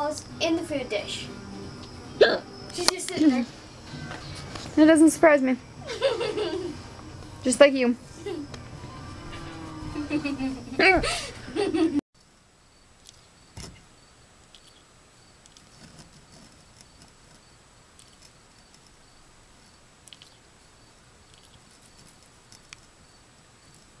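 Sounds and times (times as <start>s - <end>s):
rodent scratching and clicking: 18.0s - 19.0s, 20.0s - 20.4s, 21.3s - 23.0s.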